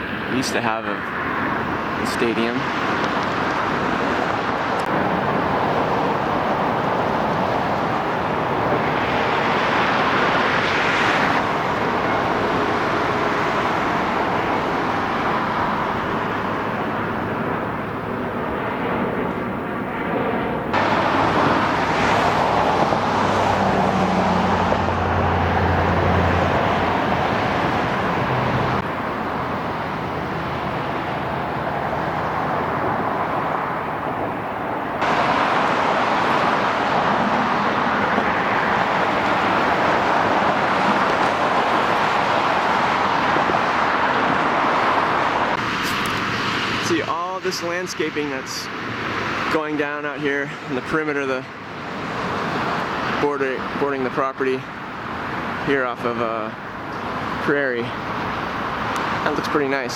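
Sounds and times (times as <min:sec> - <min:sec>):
vehicles passing: 0:00.0 - 0:59.9
deep engine hum: 0:20.6 - 0:41.7.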